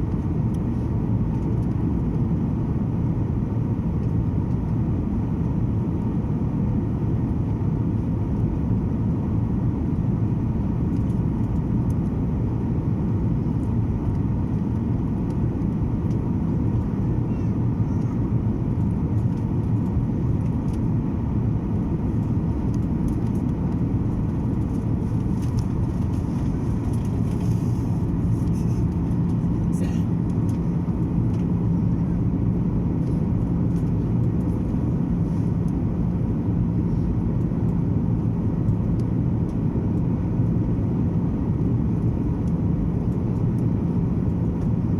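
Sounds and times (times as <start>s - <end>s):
airliner cabin engine rumble: 0.0s - 44.9s.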